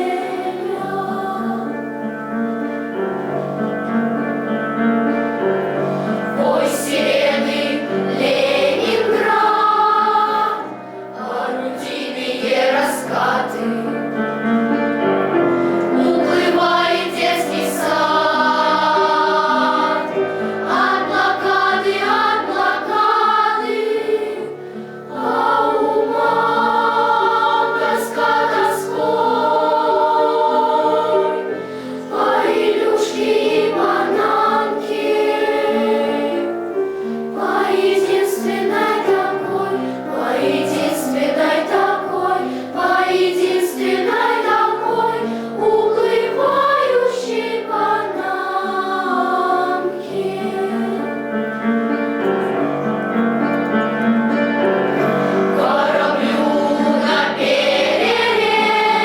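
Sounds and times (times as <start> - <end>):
children's choir singing: 0.0 - 4.0, 5.4 - 14.7, 15.3 - 52.9, 54.9 - 59.0
piano accompaniment: 0.0 - 59.0.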